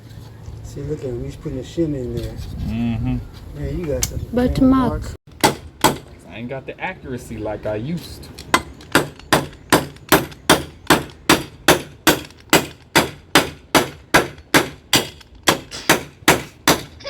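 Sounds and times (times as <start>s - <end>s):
hammer striking wood: 5.3s - 6.2s, 8.5s - 17.0s.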